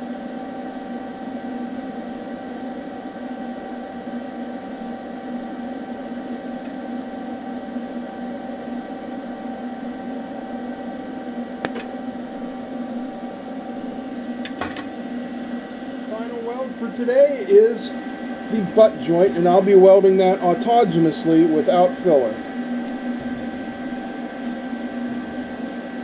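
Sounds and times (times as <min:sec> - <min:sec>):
welding arc hum and hiss: 0:00.0 - 0:26.0
sharp click: 0:11.6 - 0:11.9.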